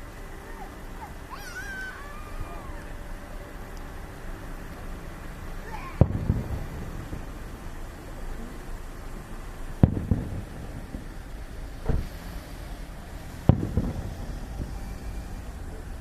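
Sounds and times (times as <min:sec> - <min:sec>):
firework shells booming: 0:05.7 - 0:15.6.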